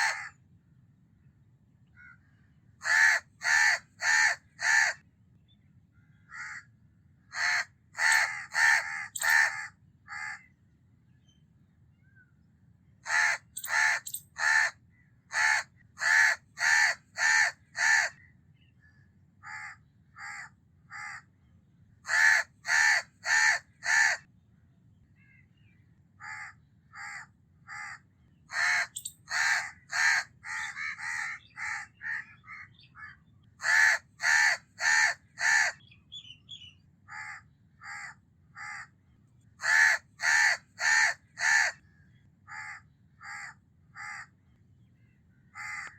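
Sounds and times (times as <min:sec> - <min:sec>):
crow cawing: 0:00.0 - 0:00.3, 0:02.8 - 0:05.0, 0:06.2 - 0:06.7, 0:07.3 - 0:10.4, 0:13.0 - 0:14.7, 0:15.3 - 0:18.2, 0:19.4 - 0:21.2, 0:22.1 - 0:24.2, 0:26.2 - 0:32.7, 0:33.6 - 0:35.8, 0:37.1 - 0:38.9, 0:39.6 - 0:41.8, 0:42.5 - 0:44.3, 0:45.6 - 0:45.9.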